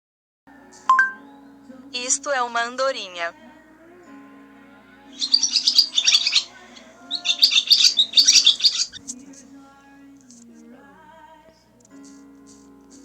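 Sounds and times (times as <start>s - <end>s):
swallow twittering: 5.0s - 9.0s.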